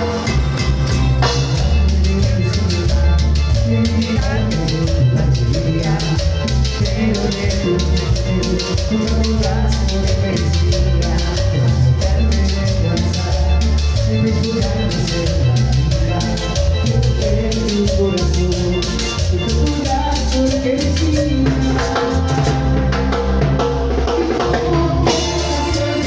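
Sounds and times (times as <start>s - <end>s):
cumbia band playing dance beat: 0.0s - 26.0s.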